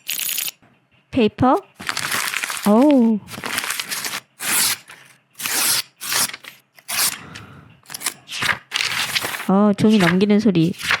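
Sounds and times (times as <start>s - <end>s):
paper rustling and page turns: 1.8s - 7.2s, 7.9s - 11.0s.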